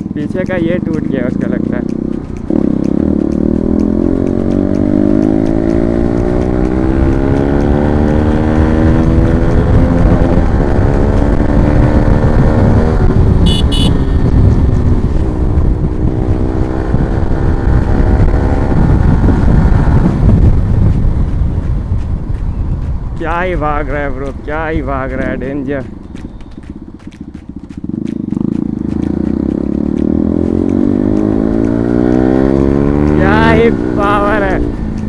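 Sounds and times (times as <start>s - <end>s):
motorcycle engine accelerating: 0.0s - 35.0s
wind rumbling on microphone: 1.9s - 35.0s
short high beep: 13.5s - 14.2s.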